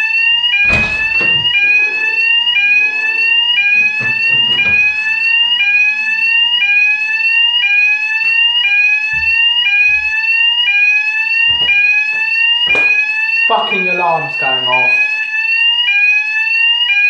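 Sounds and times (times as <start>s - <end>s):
fire alarm rising shrill tone: 0.0s - 17.0s
dull low thumps: 0.6s - 5.6s, 9.1s - 10.3s, 11.5s - 12.4s.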